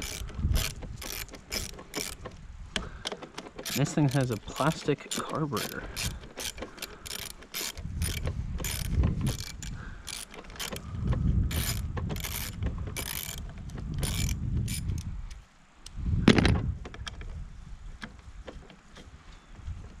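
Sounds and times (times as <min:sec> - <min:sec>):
ratchet wrench clicking: 0:00.0 - 0:02.3, 0:03.6 - 0:10.8, 0:11.5 - 0:15.4
handling noise: 0:16.2 - 0:17.4.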